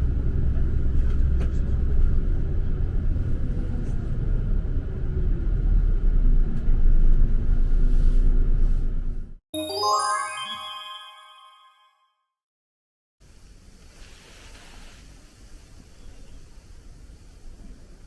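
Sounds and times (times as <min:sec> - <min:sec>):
faint engine hum: 0:00.0 - 0:09.3
vehicle rumble from on board: 0:00.0 - 0:09.4.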